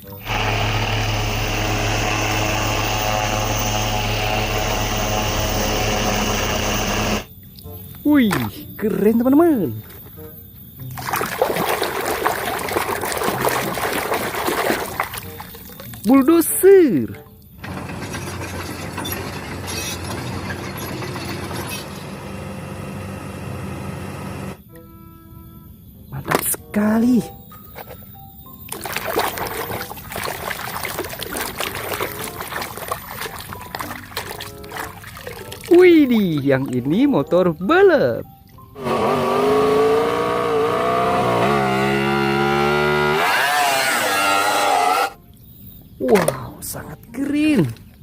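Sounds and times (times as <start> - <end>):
small machine humming and hissing: 0.0 - 7.4, 21.6 - 24.7, 38.8 - 45.2
helicopter rotor and engine: 0.2 - 7.3.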